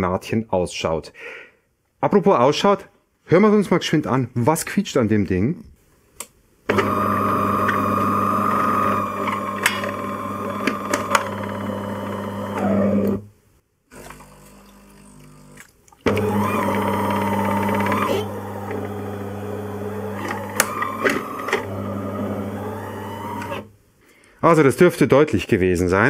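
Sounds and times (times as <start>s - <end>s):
coffee machine motor hum: 6.7s - 13.2s, 14.0s - 23.7s
clicks: 20.2s - 21.8s.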